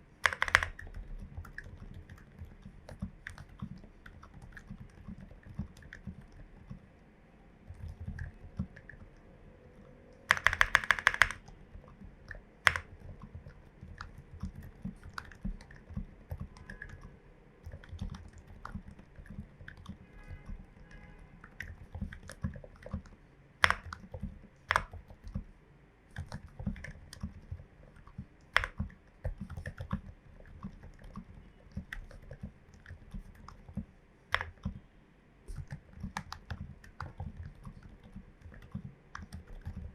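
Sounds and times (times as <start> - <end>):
loud keyboard clacks: 0.2 - 6.5, 10.3 - 11.8
soft deep keystrokes: 0.2 - 6.9, 7.6 - 34.8, 35.5 - 39.9.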